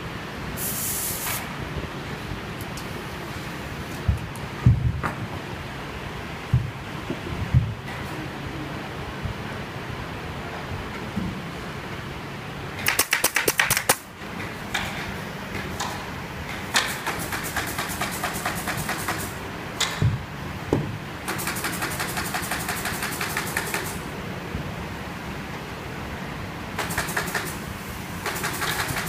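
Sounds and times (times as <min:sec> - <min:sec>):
steady machine hum: 0:01.5 - 0:12.8
rapid mechanical clicking: 0:12.8 - 0:14.0, 0:15.8 - 0:20.0, 0:21.2 - 0:24.0, 0:26.8 - 0:29.0.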